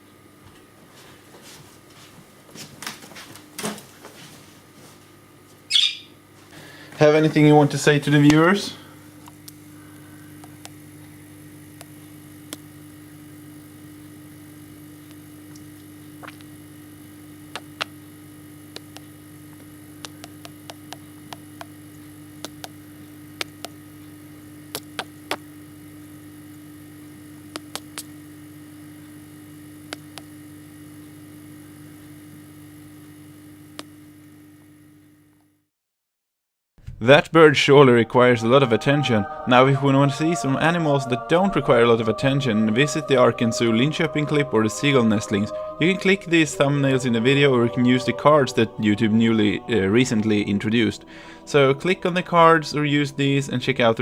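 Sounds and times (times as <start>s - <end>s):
low electrical hum: 0.0s - 35.7s, 36.8s - 54.0s
sharp clicks and taps: 18.7s - 21.8s, 22.4s - 22.8s, 23.4s - 23.8s.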